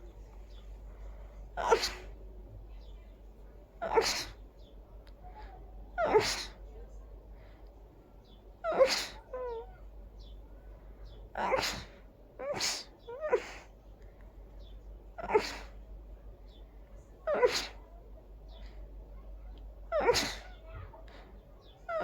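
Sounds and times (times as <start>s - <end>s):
person sneezing: 1.6s - 2.1s, 3.8s - 4.4s, 6.0s - 6.6s, 8.7s - 9.2s, 11.4s - 13.7s, 15.2s - 15.8s, 17.3s - 17.8s, 20.0s - 20.6s.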